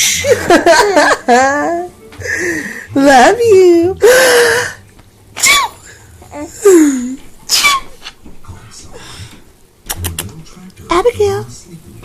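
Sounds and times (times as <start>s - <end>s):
person sneezing: 7.5s - 8.0s.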